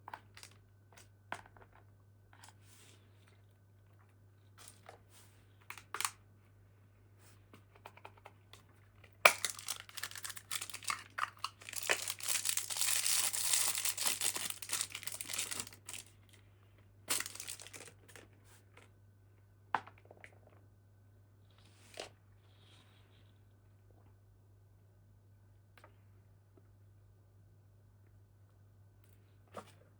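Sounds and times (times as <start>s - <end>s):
packaging tearing and crinkling: 9.3s - 16.1s, 17.1s - 18.0s.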